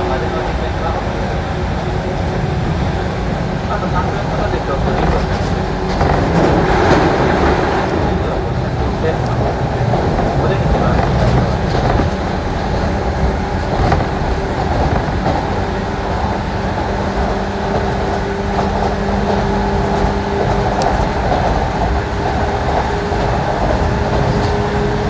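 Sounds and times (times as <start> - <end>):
electric train running: 0.0 - 25.0.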